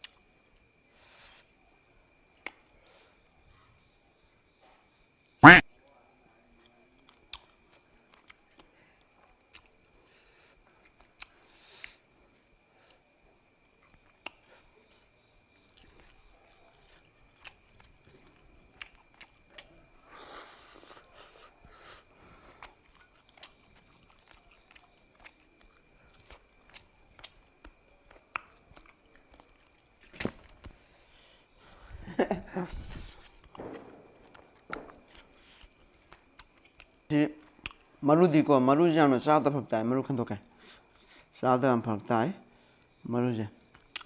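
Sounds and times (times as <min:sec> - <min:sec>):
chewing with mouth clicks: 0:06.6 - 0:12.0, 0:12.7 - 0:19.8, 0:20.5 - 0:30.8, 0:32.7 - 0:38.0, 0:43.7 - 0:44.0.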